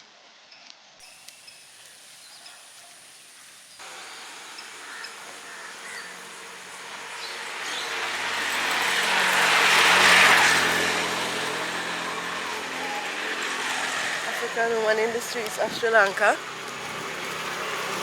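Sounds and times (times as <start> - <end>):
vehicle approaching: 3.8 - 18.0.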